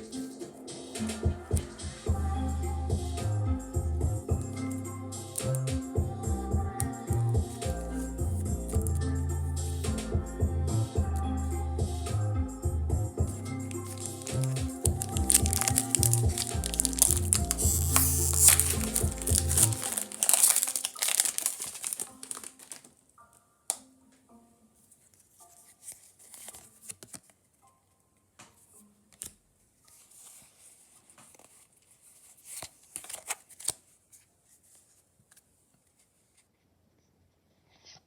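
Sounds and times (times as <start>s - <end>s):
cards handled with clicks: 5.4s - 5.8s, 13.9s - 22.9s, 25.9s - 27.4s, 32.2s - 33.9s
foil wrapper crinkling and tearing: 14.0s - 22.9s.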